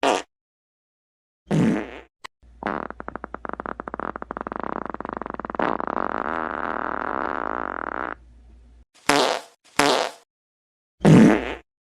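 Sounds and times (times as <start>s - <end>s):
fart sound effects: 0.0s - 0.3s, 1.5s - 8.2s, 9.0s - 10.3s, 11.0s - 11.7s.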